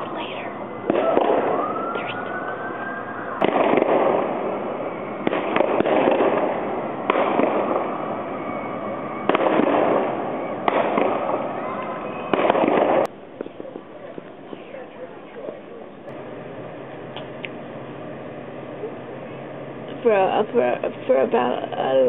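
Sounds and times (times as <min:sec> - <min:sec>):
crowd yelling and cheering: 0:00.8 - 0:03.8, 0:07.8 - 0:13.1
rising whoop: 0:00.9 - 0:03.4.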